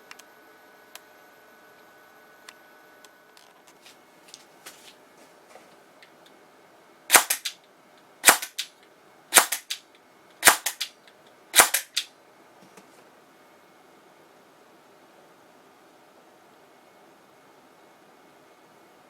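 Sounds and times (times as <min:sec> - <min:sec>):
airsoft gun shots: 0:07.1 - 0:07.6, 0:08.2 - 0:08.7, 0:09.3 - 0:09.8, 0:10.4 - 0:10.9, 0:11.6 - 0:12.1.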